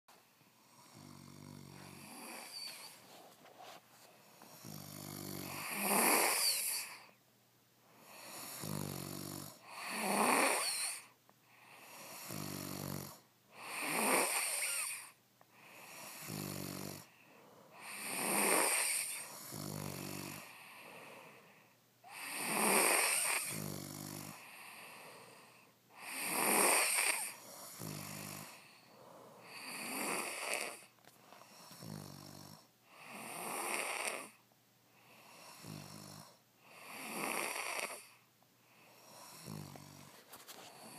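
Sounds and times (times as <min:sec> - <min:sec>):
rattling snore: 0:00.7 - 0:03.0, 0:04.4 - 0:06.9, 0:08.2 - 0:11.0, 0:12.0 - 0:15.0, 0:15.9 - 0:17.1, 0:39.1 - 0:40.1.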